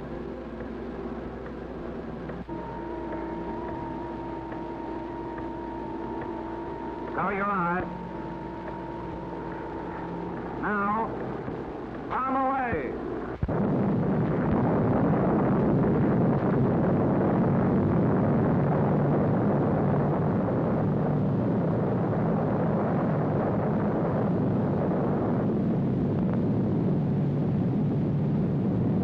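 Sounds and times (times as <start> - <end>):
bomb blast rumble: 2.2 - 29.0.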